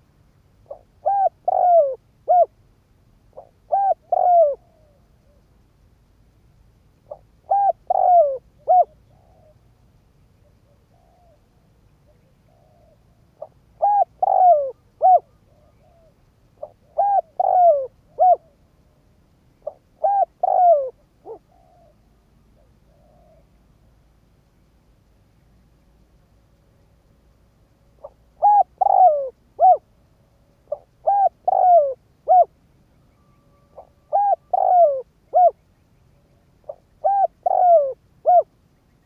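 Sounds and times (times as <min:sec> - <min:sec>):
dove cooing: 0:00.6 - 0:02.6, 0:03.3 - 0:05.4, 0:07.1 - 0:09.7, 0:12.1 - 0:18.6, 0:19.6 - 0:23.5, 0:28.0 - 0:29.9, 0:30.7 - 0:32.6, 0:33.3 - 0:35.6, 0:36.6 - 0:38.6.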